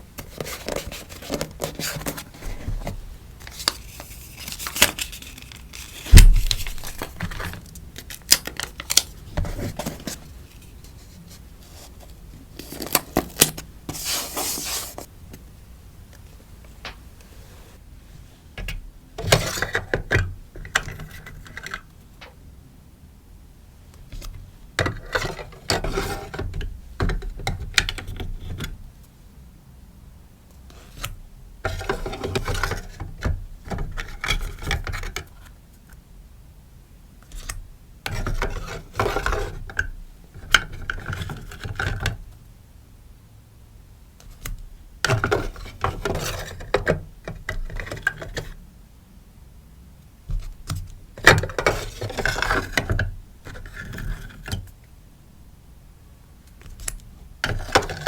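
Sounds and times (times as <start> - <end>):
sticker packaging crinkling: 3.5 - 9.2.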